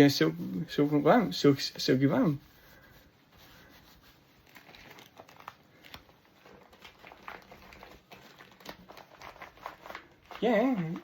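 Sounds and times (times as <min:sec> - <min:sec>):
clothing crinkling and rustling: 0:00.0 - 0:11.0.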